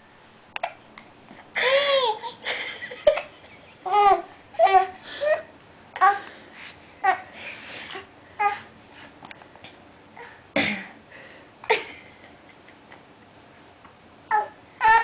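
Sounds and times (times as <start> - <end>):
baby babbling and laughing: 1.6 - 2.4, 3.8 - 6.2, 14.3 - 15.0.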